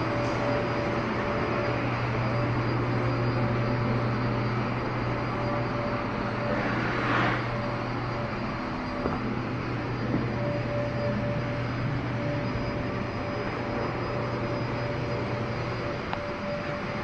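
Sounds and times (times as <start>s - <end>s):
machine humming: 0.0s - 17.0s.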